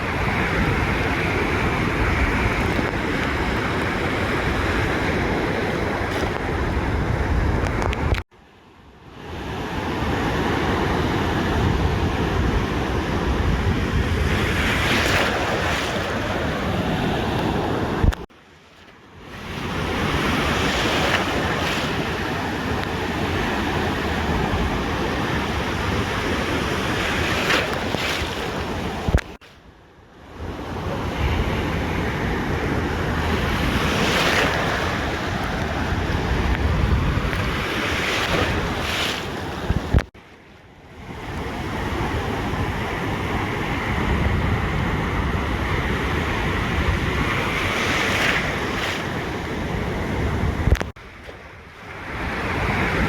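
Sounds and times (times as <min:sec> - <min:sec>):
ocean surf washing onto beach: 0:00.0 - 0:08.2, 0:09.0 - 0:18.3, 0:18.9 - 0:29.6, 0:30.2 - 0:53.0
wind buffeting microphone: 0:00.0 - 0:08.2, 0:10.9 - 0:18.3, 0:30.4 - 0:40.1, 0:41.0 - 0:53.0.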